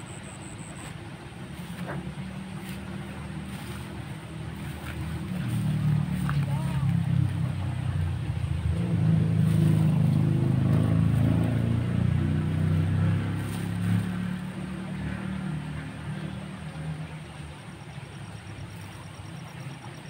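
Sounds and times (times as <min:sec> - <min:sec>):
vehicle engine passing: 0:00.0 - 0:20.0.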